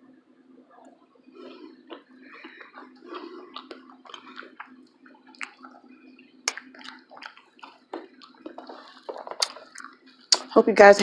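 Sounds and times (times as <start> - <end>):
low hum: 0.0 - 11.0
person chewing food: 0.7 - 10.5.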